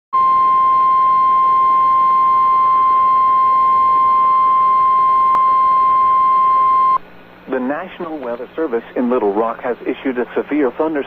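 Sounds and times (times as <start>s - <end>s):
steady alarm beep: 0.2s - 7.0s.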